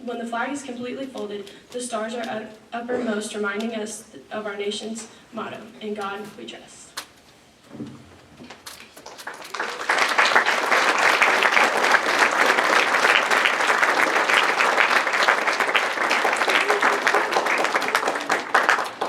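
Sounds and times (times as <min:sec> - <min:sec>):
audience applauding: 0:08.9 - 0:19.0.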